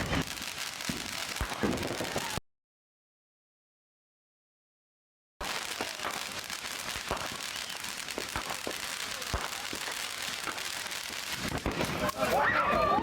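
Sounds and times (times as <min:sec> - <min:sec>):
fireworks crackling and banging: 0:00.0 - 0:02.4, 0:05.4 - 0:13.0.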